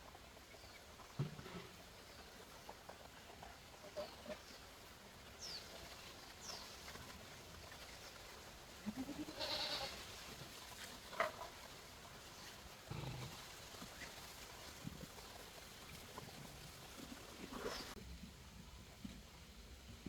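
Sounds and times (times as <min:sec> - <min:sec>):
farm animal calling: 0:08.8 - 0:10.0.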